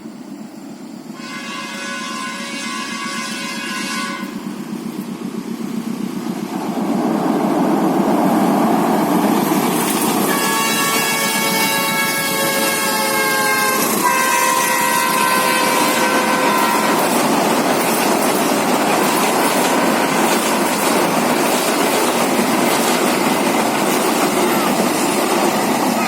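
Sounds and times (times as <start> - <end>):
train horn blasts: 1.1 - 4.5, 10.3 - 17.2
train wheels clattering on rails: 2.0 - 26.0.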